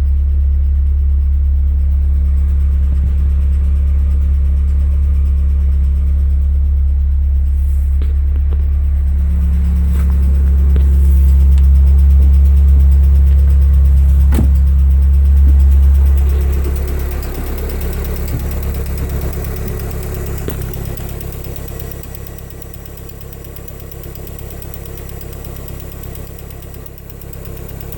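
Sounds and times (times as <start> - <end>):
car engine idling with knock: 0.0 - 27.9.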